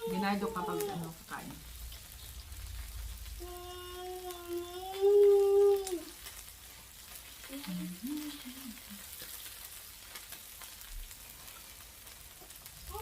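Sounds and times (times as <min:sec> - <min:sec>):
food sizzling on grill plate: 0:00.0 - 0:13.0.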